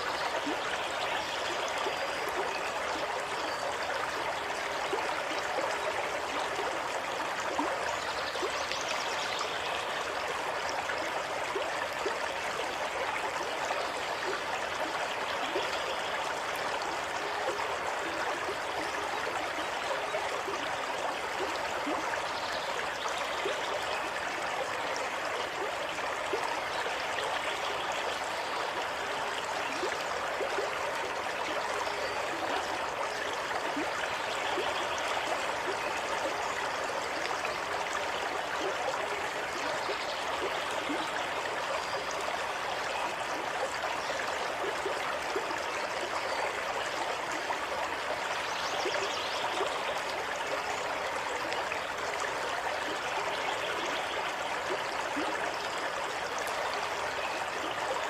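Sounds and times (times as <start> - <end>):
stream of water gurgling: 0.0 - 58.0.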